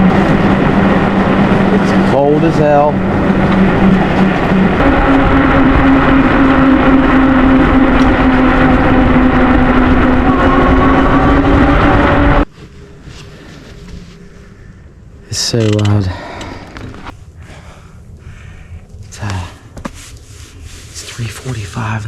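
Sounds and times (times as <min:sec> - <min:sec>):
heavy rushing noise: 0:00.0 - 0:14.2
electric bike motor whining: 0:03.0 - 0:12.5.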